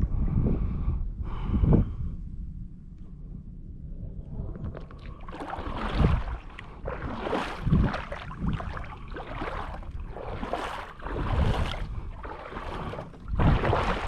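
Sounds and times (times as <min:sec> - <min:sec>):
wind on microphone: 0:00.0 - 0:14.0
water sloshing around kayak: 0:04.4 - 0:14.0.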